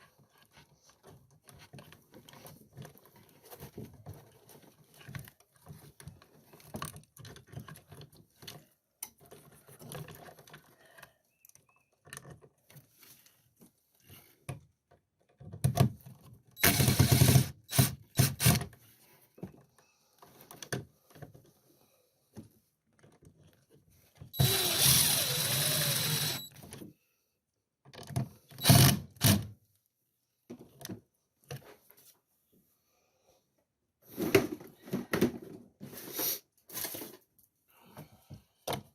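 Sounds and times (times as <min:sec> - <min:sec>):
power drill whining: 0:16.6 - 0:18.6, 0:24.4 - 0:26.6, 0:28.6 - 0:29.4.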